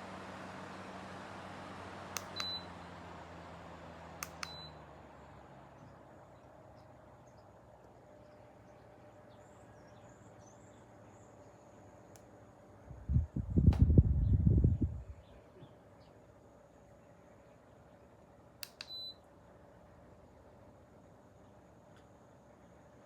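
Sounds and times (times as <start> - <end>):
fan whirring and humming: 0.0 - 23.0
short beeps with clicks: 2.4 - 2.7, 4.4 - 4.8, 18.8 - 19.2.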